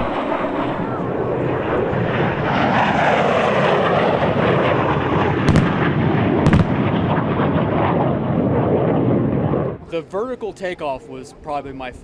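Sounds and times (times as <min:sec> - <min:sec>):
jet aircraft flying past: 0:00.0 - 0:10.1
sharp bangs: 0:05.2 - 0:09.5.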